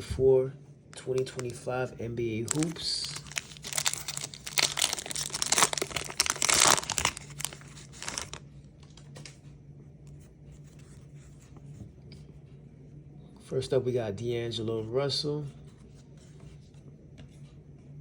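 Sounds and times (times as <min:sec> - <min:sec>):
wrapper tearing and crinkling: 0:02.5 - 0:08.4.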